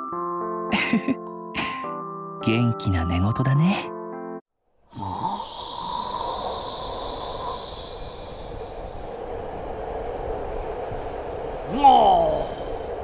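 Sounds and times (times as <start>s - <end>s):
person snoring: 4.9s - 8.8s.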